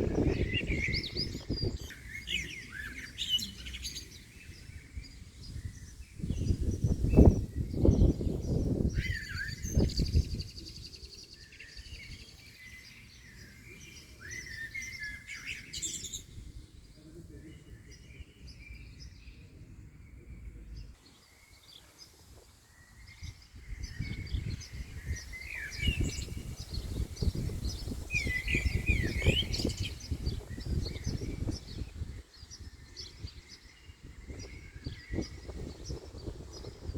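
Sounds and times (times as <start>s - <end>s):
wind buffeting microphone: 0.0s - 2.5s, 4.4s - 11.0s, 23.0s - 36.9s
wild birds chirping and singing: 0.0s - 36.9s.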